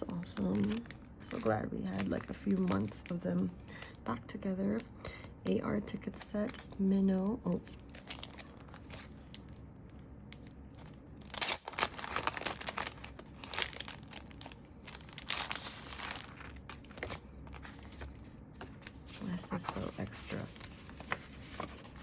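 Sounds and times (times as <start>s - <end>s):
packaging crinkling and tearing: 0.0s - 3.9s, 7.6s - 9.5s, 10.3s - 22.0s.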